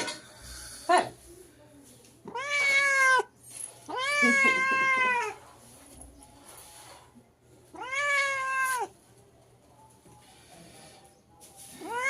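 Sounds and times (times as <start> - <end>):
cat meowing: 2.3 - 3.3, 3.9 - 5.4, 7.7 - 8.9, 11.8 - 12.0.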